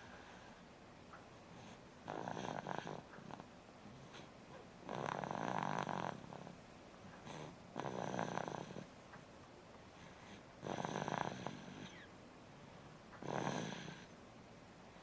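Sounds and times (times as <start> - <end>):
quiet breathing: 0.0 - 9.0, 9.8 - 15.0
person snoring: 7.3 - 8.8, 10.6 - 12.0, 13.2 - 14.1.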